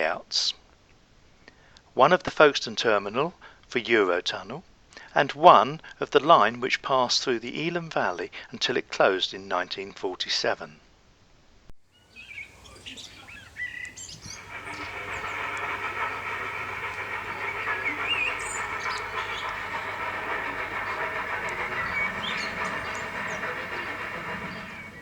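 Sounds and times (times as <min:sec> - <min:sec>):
birds chirping: 0:12.0 - 0:25.0
train running: 0:12.0 - 0:25.0.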